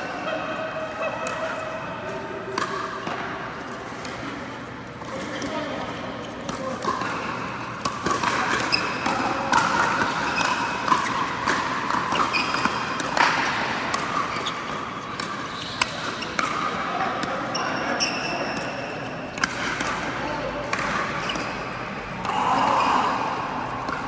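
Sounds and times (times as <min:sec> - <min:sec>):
shoes squeaking on court floor: 0:06.2 - 0:09.1, 0:09.8 - 0:19.8, 0:20.4 - 0:24.0.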